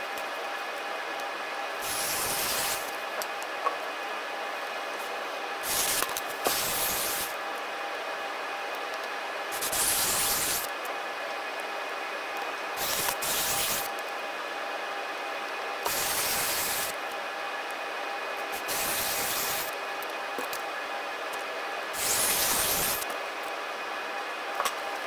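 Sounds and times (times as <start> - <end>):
hissing air spray blasts: 5.6 - 7.3, 9.6 - 10.7, 22.0 - 23.0.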